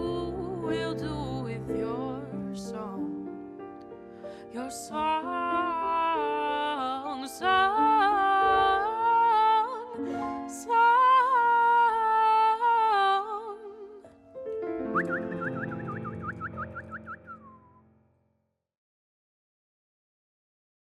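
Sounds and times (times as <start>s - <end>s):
woman singing with vibrato: 0.0s - 3.1s, 4.5s - 14.0s
piano chords: 0.0s - 17.9s
warbling high tone: 14.9s - 17.6s.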